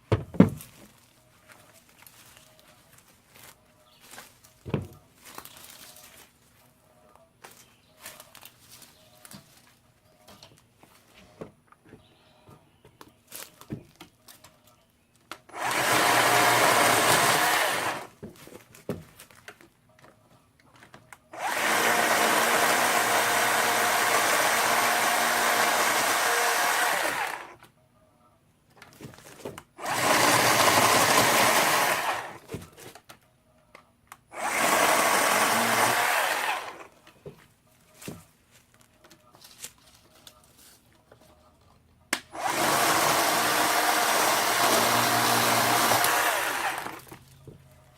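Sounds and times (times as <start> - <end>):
electric chainsaw motor running: 15.5 - 18.1, 21.4 - 27.6, 29.8 - 32.4, 34.3 - 36.9, 42.4 - 47.2.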